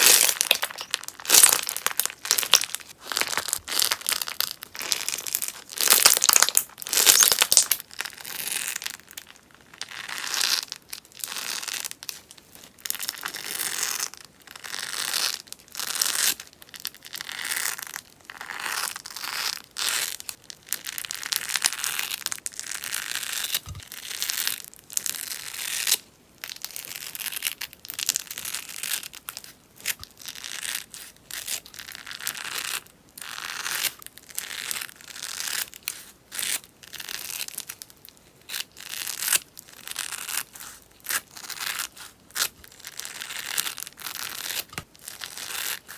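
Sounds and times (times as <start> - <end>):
slime crackling and popping: 0.0 - 9.9.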